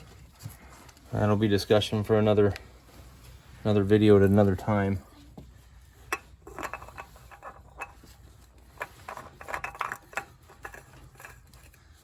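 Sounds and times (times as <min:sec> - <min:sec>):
hands handling oil filter: 0:04.2 - 0:12.0.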